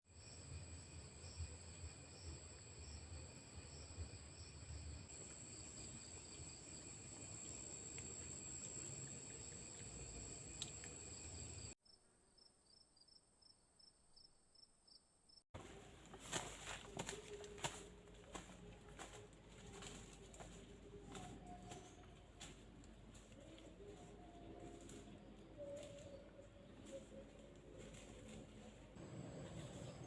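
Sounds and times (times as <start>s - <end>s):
insects trilling: 0.1s - 11.8s.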